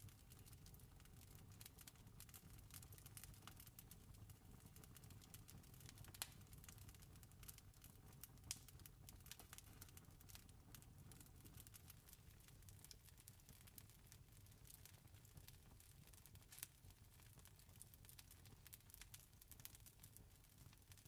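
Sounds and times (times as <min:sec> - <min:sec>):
campfire crackling: 0:00.0 - 0:21.0
fire pops: 0:05.8 - 0:06.8, 0:07.4 - 0:10.2.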